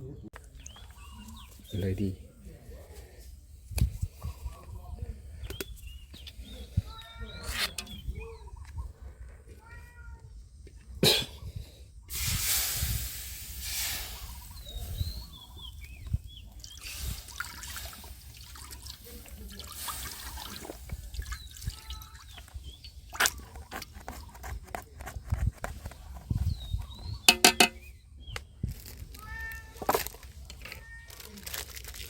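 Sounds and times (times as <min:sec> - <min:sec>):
liquid trickling and splashing: 0:16.5 - 0:23.6
knocks on pot: 0:27.3 - 0:27.8.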